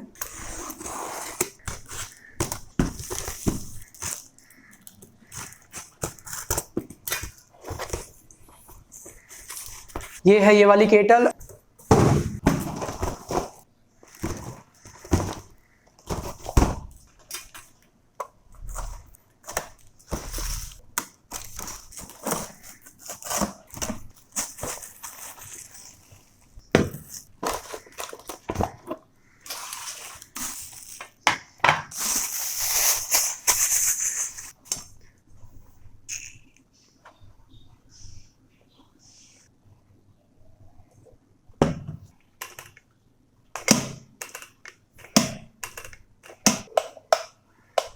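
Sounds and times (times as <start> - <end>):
packaging rustling: 0.2 - 10.2, 11.4 - 17.8, 18.7 - 28.8, 31.9 - 34.6.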